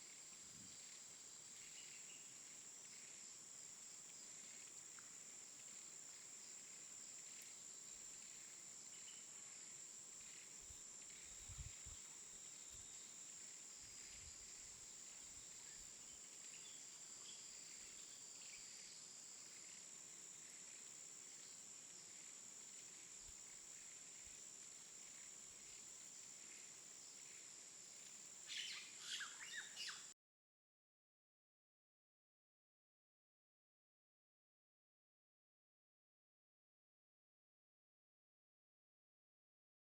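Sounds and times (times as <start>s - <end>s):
faint hiss: 0.0s - 30.2s.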